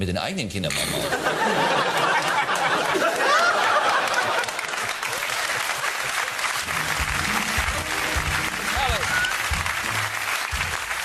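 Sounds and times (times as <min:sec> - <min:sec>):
laughter: 0:00.8 - 0:06.5
audience applauding: 0:01.6 - 0:11.0.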